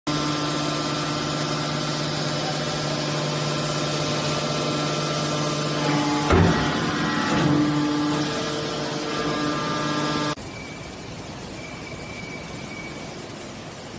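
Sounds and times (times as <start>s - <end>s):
hydraulic power unit humming: 0.1s - 13.2s
loud knock: 6.2s - 7.6s.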